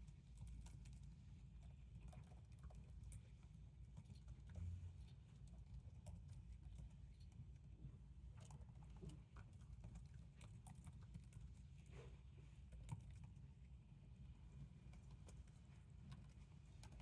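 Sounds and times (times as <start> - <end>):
low room hum: 0.0 - 17.0
typing on laptop keyboard: 14.8 - 17.0.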